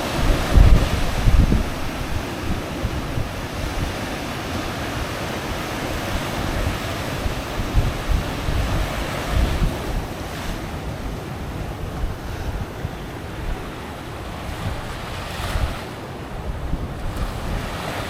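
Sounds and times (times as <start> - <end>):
surf washing onto beach: 0.0 - 18.0
wind buffeting microphone: 0.0 - 18.0.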